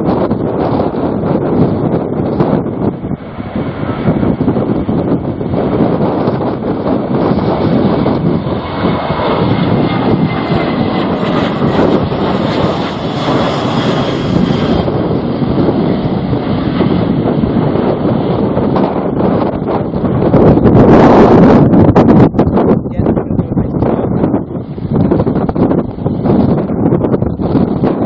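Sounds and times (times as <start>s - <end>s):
wind buffeting microphone: 0.0s - 28.0s
plane engines passing: 0.2s - 20.7s.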